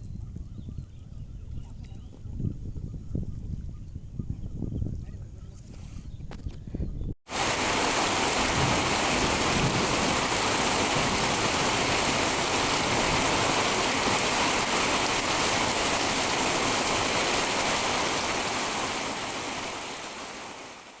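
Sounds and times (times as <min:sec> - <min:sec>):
heavy rain: 0:07.3 - 0:21.0.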